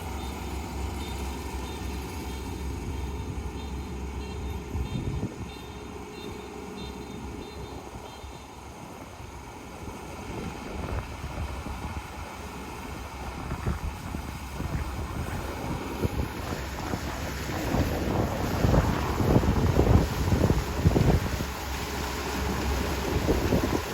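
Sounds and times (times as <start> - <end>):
combine harvester humming: 0.0 - 23.9
wind buffeting microphone: 4.2 - 5.6, 9.3 - 23.9.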